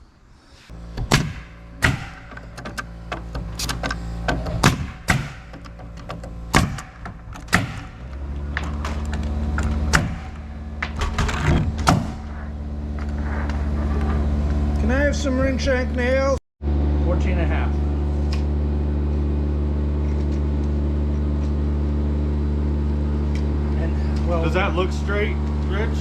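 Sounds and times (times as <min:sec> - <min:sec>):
motor hum: 0:00.7 - 0:26.0
nails being hammered: 0:01.0 - 0:03.3, 0:04.3 - 0:09.0, 0:09.9 - 0:12.2.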